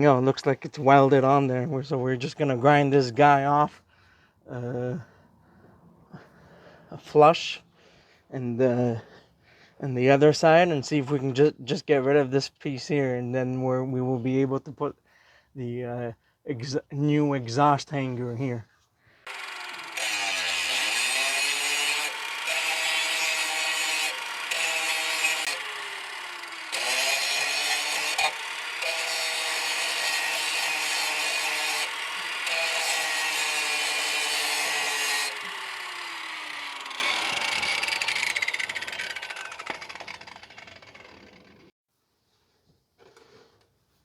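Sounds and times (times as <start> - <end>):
power grinder grinding metal: 19.2 - 41.7.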